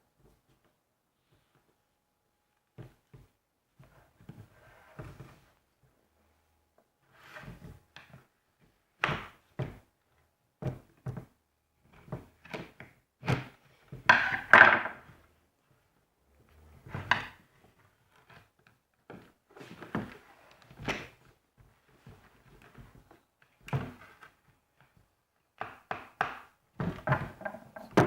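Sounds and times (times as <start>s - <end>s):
drill casing knocks and clunks: 26.9s - 28.0s.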